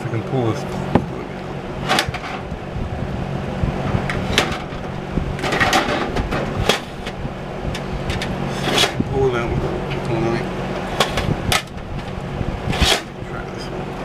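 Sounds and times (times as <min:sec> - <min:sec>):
steady low hum: 0:00.0 - 0:14.0
hand tool prying and scraping plastic: 0:05.4 - 0:09.0, 0:11.0 - 0:13.2.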